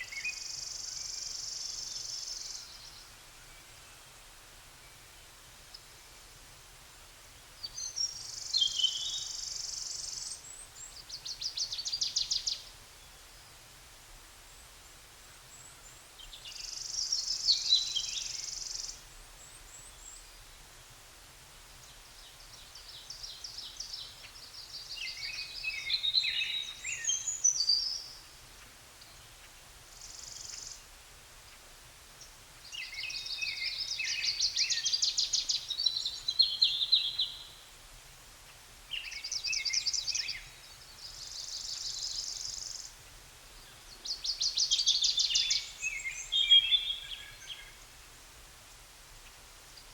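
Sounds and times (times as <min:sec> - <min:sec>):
songbird singing trills: 0:00.0 - 0:04.2, 0:07.6 - 0:13.5, 0:15.5 - 0:20.4, 0:21.8 - 0:30.9, 0:32.2 - 0:37.7, 0:38.9 - 0:47.8.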